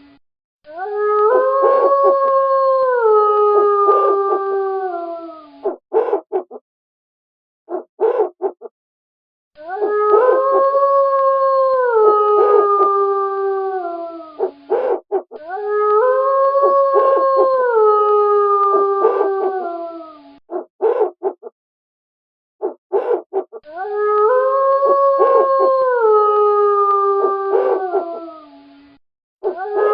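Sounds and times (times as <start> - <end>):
wolves howling: 0.7 - 6.6, 7.7 - 8.6, 9.6 - 21.2, 22.6 - 28.7, 29.4 - 29.9
wolves yipping: 5.6 - 6.6, 7.7 - 8.7, 14.4 - 15.4, 19.0 - 19.5, 20.5 - 21.5, 22.6 - 23.6, 25.2 - 25.5, 27.5 - 28.2, 29.4 - 29.9.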